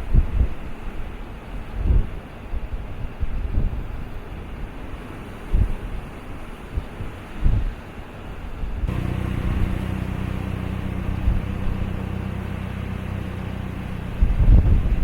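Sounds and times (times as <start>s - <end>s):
wind rumbling on microphone: 0.0s - 15.0s
vehicle engine running: 8.9s - 15.0s.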